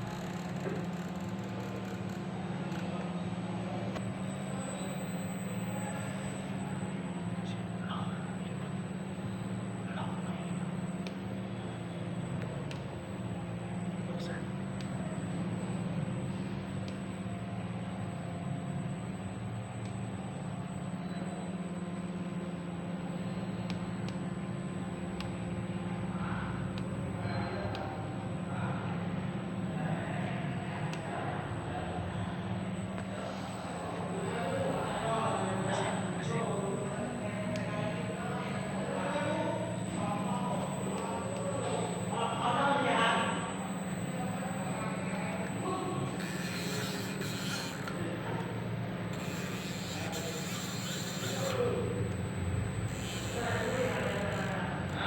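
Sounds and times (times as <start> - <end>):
machine humming and whining: 0.0 - 55.0
machine humming: 43.4 - 55.0.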